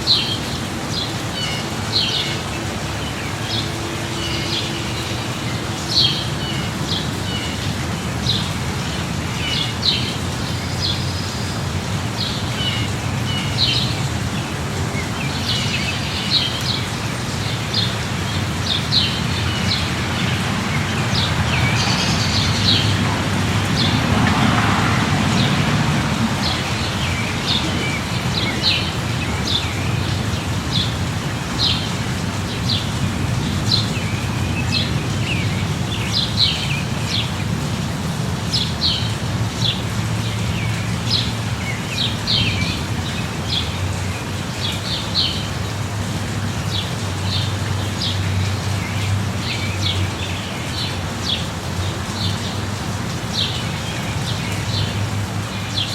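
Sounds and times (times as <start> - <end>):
light rain: 0.0 - 55.9
small birds chirping: 9.3 - 37.4.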